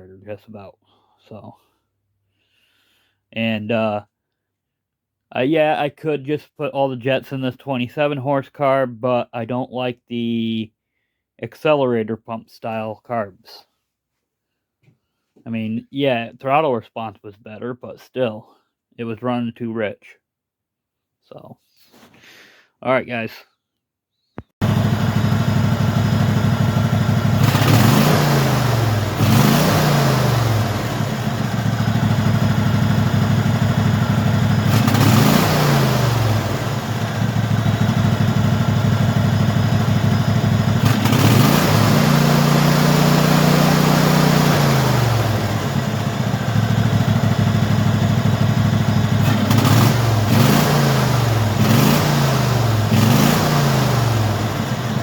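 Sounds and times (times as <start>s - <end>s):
lawn tractor engine revving: 24.6s - 55.0s.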